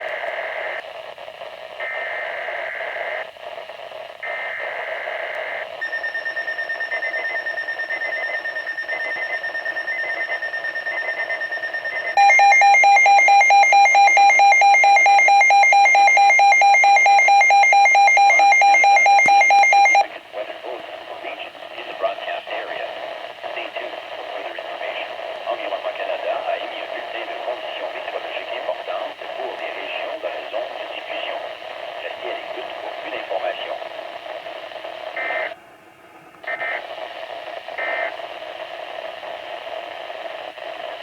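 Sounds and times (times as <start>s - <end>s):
faint beeps: 5.8s - 20.0s
pulsing electronic alarm beep: 5.8s - 20.0s
screechy data tone bursts: 5.8s - 20.0s
steady high alert tone: 5.8s - 20.0s.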